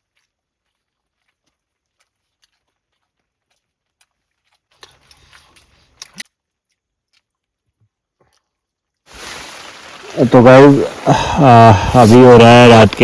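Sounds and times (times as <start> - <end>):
crunchy chewing: 0.0 - 8.6.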